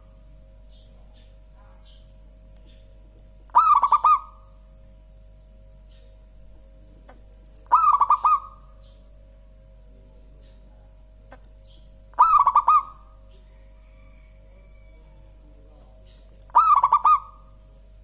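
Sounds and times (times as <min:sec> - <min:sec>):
faint high bird chirps: 0:00.0 - 0:04.6, 0:07.6 - 0:09.2, 0:10.3 - 0:17.6
faint steady hum: 0:00.0 - 0:18.0
dove cooing: 0:03.5 - 0:04.6, 0:07.1 - 0:08.8, 0:12.1 - 0:17.7.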